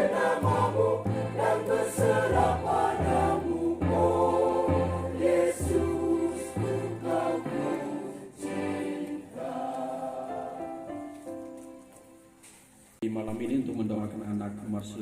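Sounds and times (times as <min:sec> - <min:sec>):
choir singing a hymn: 0:00.0 - 0:11.1.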